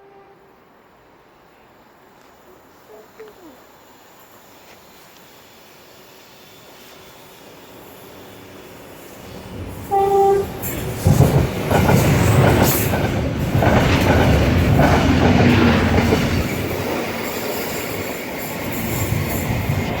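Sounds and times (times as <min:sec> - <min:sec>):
train horn blast: 0:00.0 - 0:00.7, 0:09.8 - 0:10.7
train engines rumbling: 0:00.0 - 0:20.0
wheels on rails: 0:02.1 - 0:20.0.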